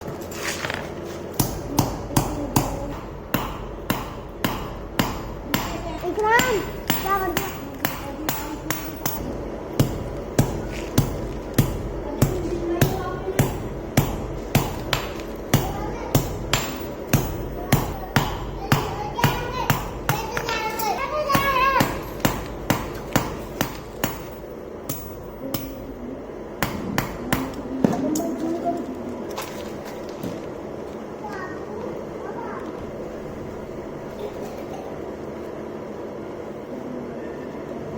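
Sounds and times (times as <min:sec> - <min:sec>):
low steady hum: 0:00.0 - 0:37.9
hammer striking steel: 0:01.3 - 0:26.0, 0:26.6 - 0:28.0.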